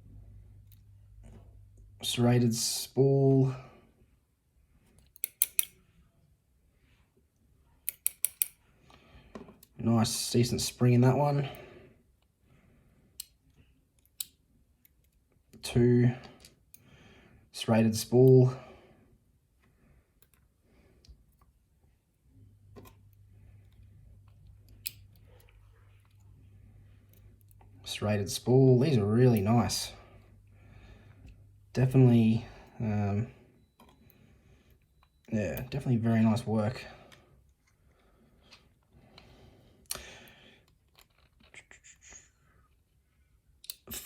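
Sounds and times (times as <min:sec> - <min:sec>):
low steady hum: 0:00.0 - 0:44.0
small metal pins and tools clicking: 0:05.0 - 0:05.8, 0:07.8 - 0:08.6.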